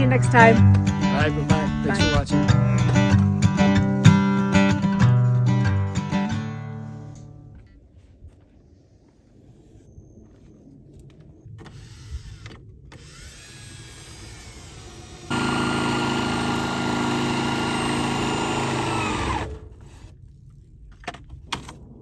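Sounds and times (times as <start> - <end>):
power tool motor running: 13.0 - 20.0.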